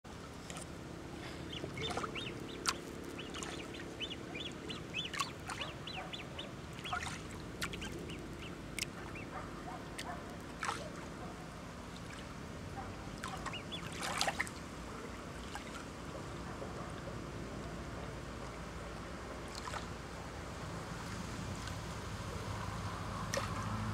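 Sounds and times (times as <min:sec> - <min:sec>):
water lapping: 0:00.1 - 0:22.6, 0:23.2 - 0:23.9
sharp splashes: 0:00.4 - 0:09.2, 0:09.9 - 0:11.1, 0:13.0 - 0:14.6, 0:19.4 - 0:20.0, 0:23.3 - 0:23.8
waterfowl calling: 0:01.2 - 0:11.4, 0:12.0 - 0:14.5.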